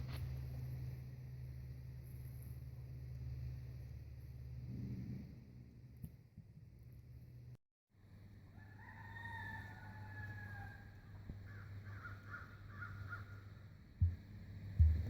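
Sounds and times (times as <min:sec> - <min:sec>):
emu drumming low rumble: 0:00.0 - 0:07.6, 0:13.8 - 0:15.0
bird calling: 0:11.4 - 0:13.6.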